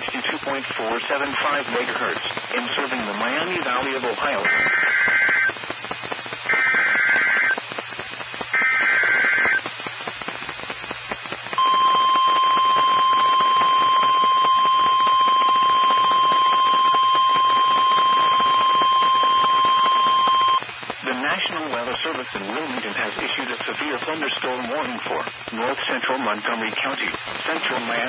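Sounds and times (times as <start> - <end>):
warbling digital data bursts: 4.2 - 5.6, 6.5 - 7.6, 8.5 - 9.6, 11.6 - 20.6
steady alarm tone: 11.6 - 20.6.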